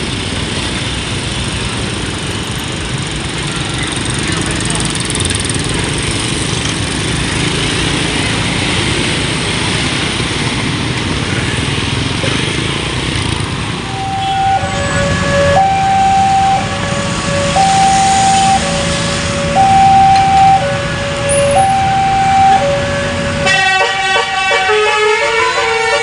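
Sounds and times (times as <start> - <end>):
rushing rumbling noise: 0.0 - 23.6
two-tone bus horn melody: 13.8 - 26.0.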